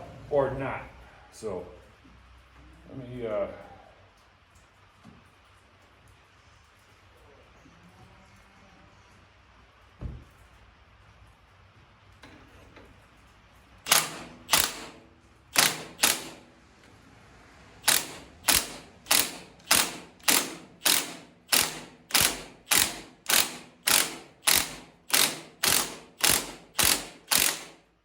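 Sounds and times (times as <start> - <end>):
impact wrench hammering: 13.9 - 16.5, 17.8 - 27.9.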